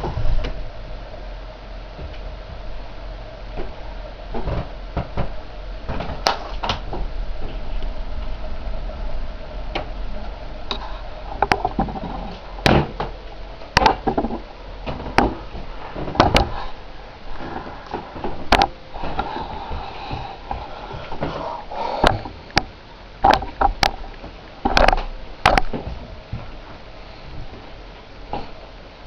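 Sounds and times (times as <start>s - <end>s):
sharp clicks and knocks: 11.4s - 16.6s, 17.5s - 21.4s, 22.0s - 26.5s.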